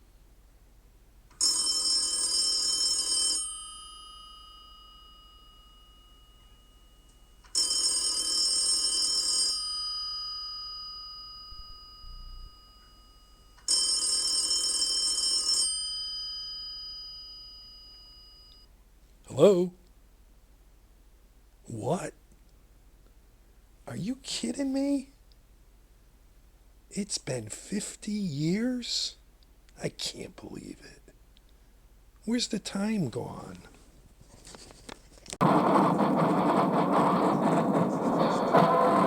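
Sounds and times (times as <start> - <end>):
telephone ringing: 1.4 - 10.5, 12.5 - 17.1.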